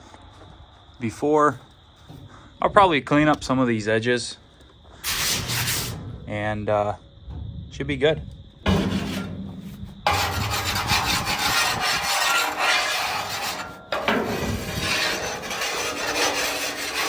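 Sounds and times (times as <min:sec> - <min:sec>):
scraper rasping on steel: 0:05.1 - 0:06.0, 0:08.7 - 0:09.5, 0:10.1 - 0:17.0.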